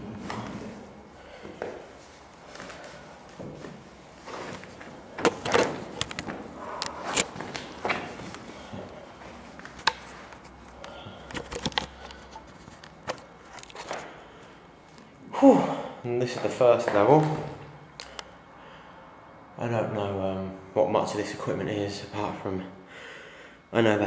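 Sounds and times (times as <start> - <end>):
hands and feet on ladder rungs: 1.4 - 14.1.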